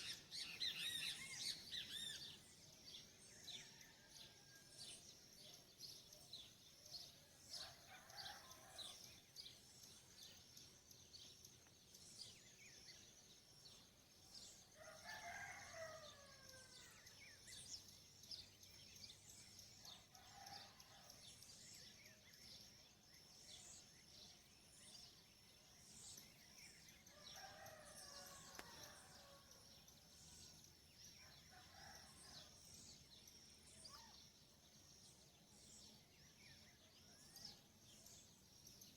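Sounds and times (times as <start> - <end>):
small birds chirping: 0.0 - 2.8
rooster crowing: 14.8 - 16.8.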